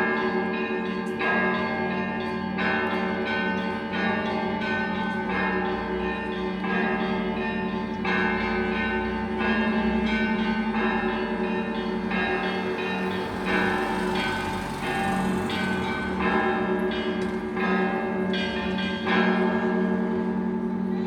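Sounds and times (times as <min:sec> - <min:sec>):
church bells pealing: 0:00.0 - 0:21.0
deep bell humming: 0:03.9 - 0:20.5.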